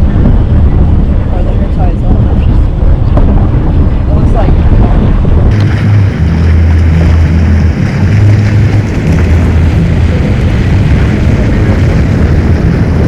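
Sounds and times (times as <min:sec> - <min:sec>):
wind on microphone: 0:00.0 - 0:13.0
outboard motor running: 0:05.5 - 0:13.0.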